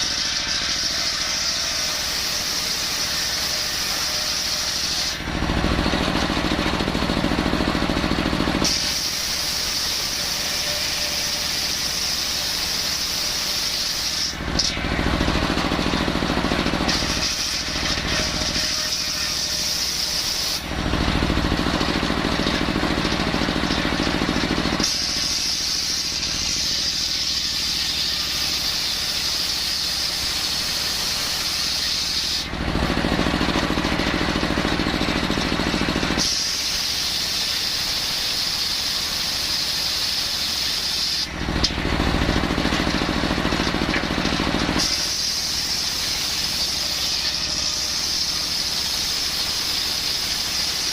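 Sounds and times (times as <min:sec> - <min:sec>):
circular saw blade squealing: 0:00.0 - 0:05.2, 0:08.6 - 0:20.7, 0:23.3 - 0:32.5, 0:44.7 - 0:50.9
saw engine running: 0:00.0 - 0:50.9.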